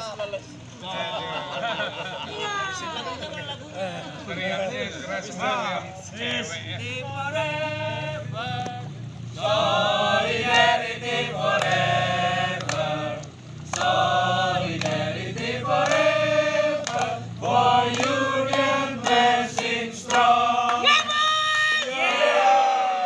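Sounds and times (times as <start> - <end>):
many voices singing together: 6.0 - 23.0
steady low hum: 6.5 - 21.5.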